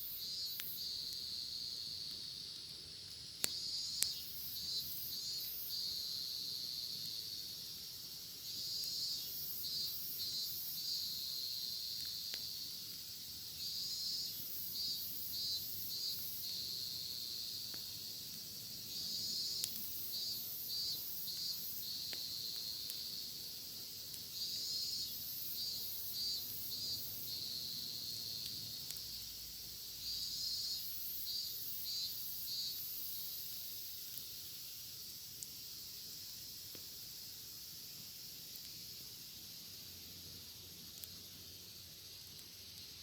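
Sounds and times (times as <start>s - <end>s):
faint campfire crackles: 0.0s - 43.0s
cicada buzzing: 3.6s - 6.9s, 8.4s - 11.9s, 13.5s - 17.7s, 18.8s - 23.7s, 24.3s - 28.4s, 30.1s - 33.7s.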